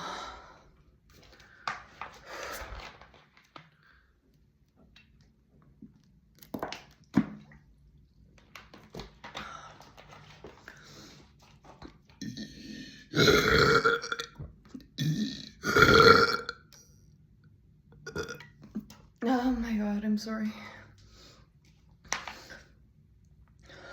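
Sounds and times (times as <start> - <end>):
woman burping: 12.2 - 14.4, 15.0 - 16.6, 18.0 - 18.5.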